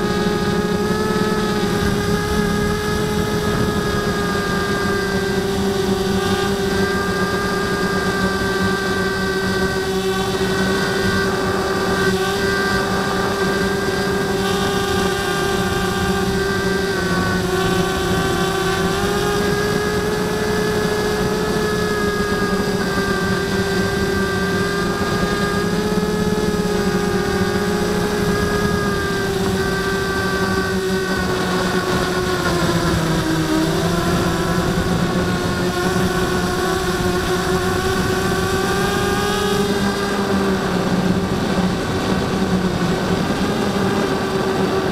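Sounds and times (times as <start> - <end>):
quadcopter motors whining: 0.0 - 44.9.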